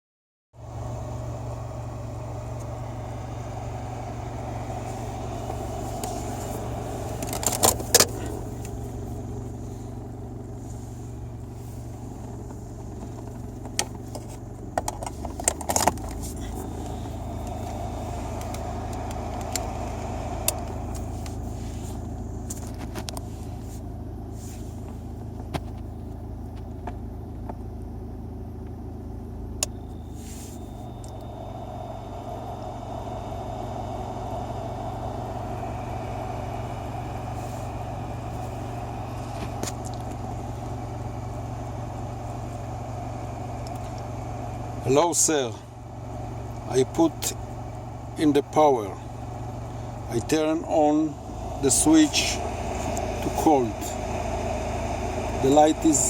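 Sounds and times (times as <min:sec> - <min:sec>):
car fridge humming: 0:00.6 - 0:56.0
sharp clicks and knocks: 0:12.4 - 0:16.2.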